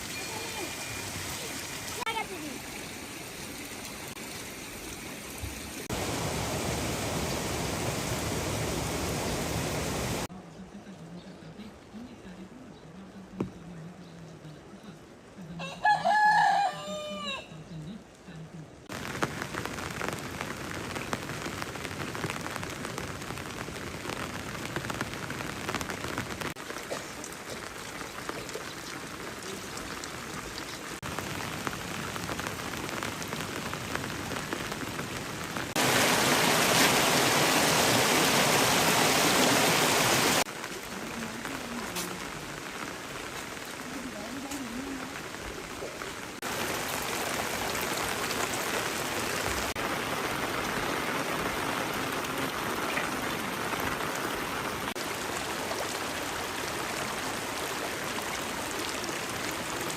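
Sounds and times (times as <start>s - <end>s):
rain falling: 0.0s - 10.3s, 17.8s - 59.9s
rooster crowing: 15.6s - 17.6s.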